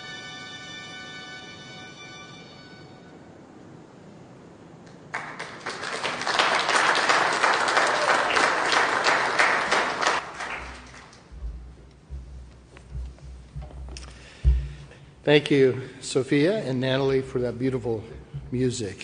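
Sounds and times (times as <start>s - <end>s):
music: 0.0s - 3.2s
congregation applauding: 4.9s - 11.3s.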